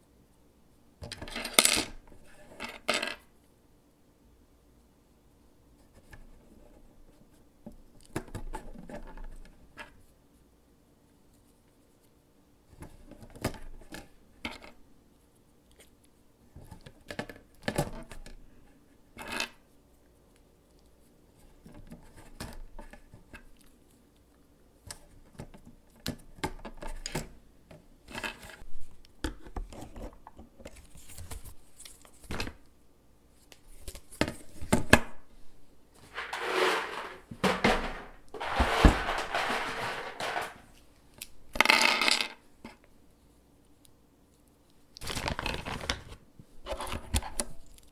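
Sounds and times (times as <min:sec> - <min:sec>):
keyboard parts clicking and clattering: 0:36.1 - 0:40.7.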